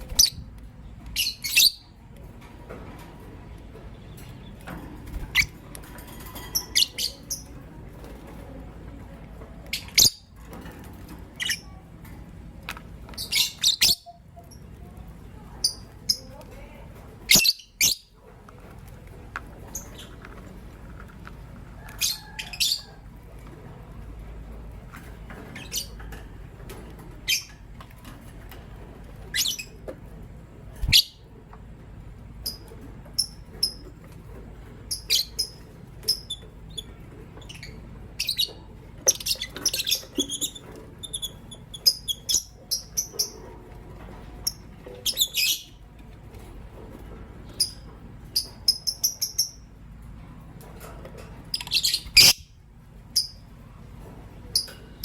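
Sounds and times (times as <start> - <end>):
lovebirds chirping: 0.0 - 2.0, 3.5 - 7.6, 13.1 - 14.7, 34.9 - 43.4, 51.5 - 52.5.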